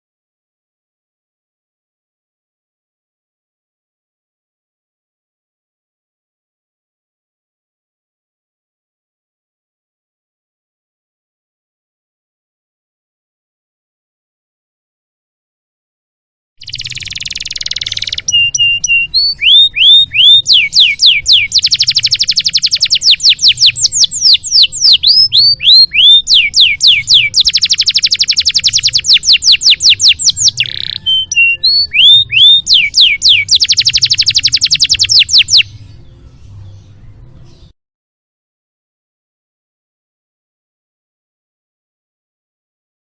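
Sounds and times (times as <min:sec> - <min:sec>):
canary singing: 0:16.6 - 0:37.7.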